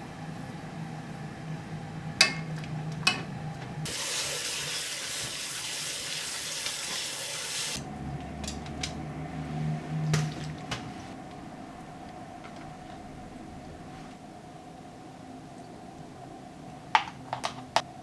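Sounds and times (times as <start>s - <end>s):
water running: 3.9s - 7.8s.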